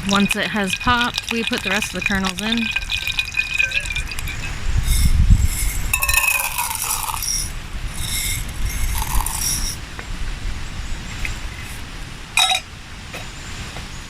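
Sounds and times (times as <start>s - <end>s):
popcorn rattling in metal cup: 0.0s - 9.8s.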